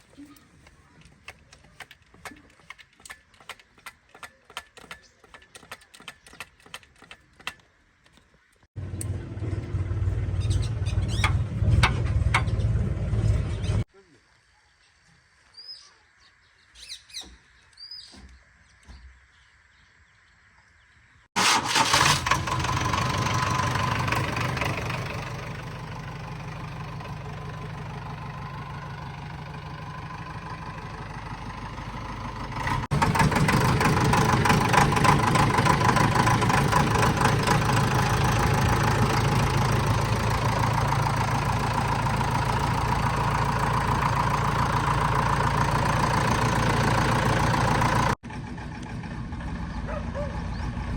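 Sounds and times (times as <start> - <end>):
diesel engine running: 8.8 - 13.9, 21.4 - 50.9.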